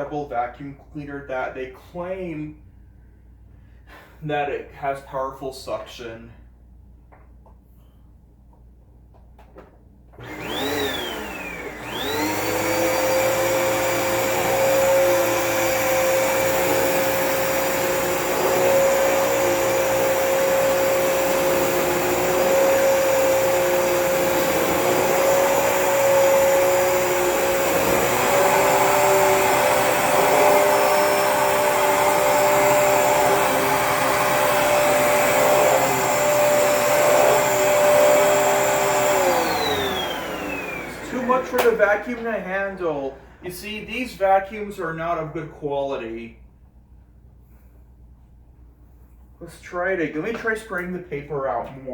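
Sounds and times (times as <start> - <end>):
vacuum cleaner motor whine: 10.2 - 42.8.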